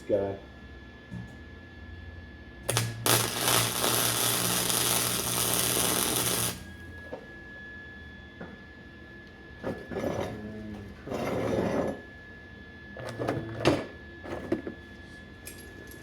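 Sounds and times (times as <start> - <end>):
welding arc burning: 2.7 - 6.7.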